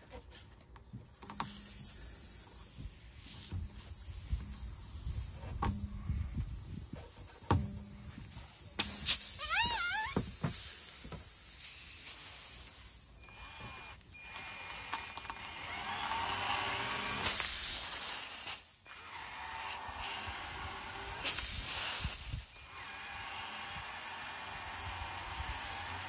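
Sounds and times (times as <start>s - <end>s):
drill-driven reamer rasping: 13.3s - 18.3s, 18.9s - 26.0s.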